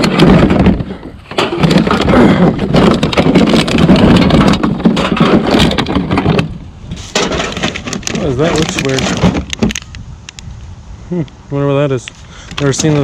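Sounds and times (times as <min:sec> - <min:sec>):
plastic packaging crackling: 0:01.3 - 0:10.0.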